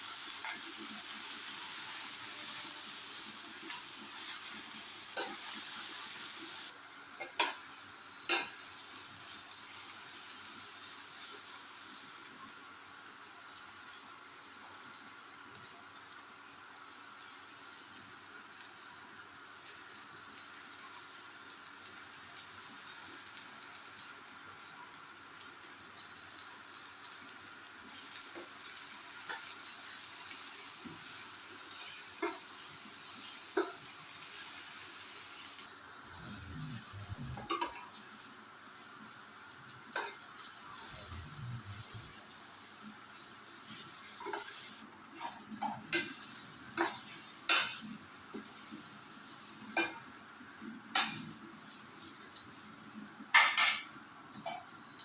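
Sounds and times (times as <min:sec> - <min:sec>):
vegetables sizzling in hot oil: 0:00.0 - 0:55.0.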